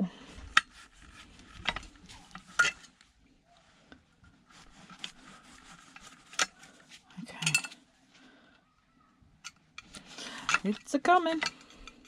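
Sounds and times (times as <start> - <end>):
metal tools clinking and scraping: 0.5 - 3.0, 7.2 - 7.9, 9.4 - 12.0.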